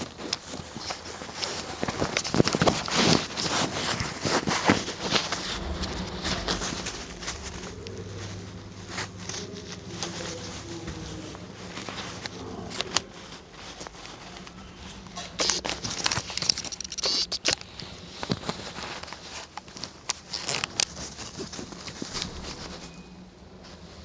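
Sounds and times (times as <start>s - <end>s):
rustling and crinkling: 0.0s - 24.0s
steady low hum: 4.8s - 17.1s.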